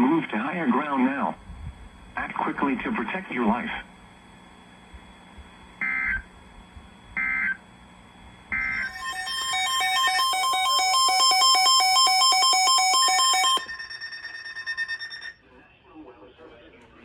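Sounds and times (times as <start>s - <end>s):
buzzing data bursts: 3.9s - 7.7s, 8.4s - 15.3s
rapid electronic alert beeps: 5.8s - 6.3s, 7.2s - 7.6s, 8.5s - 15.4s.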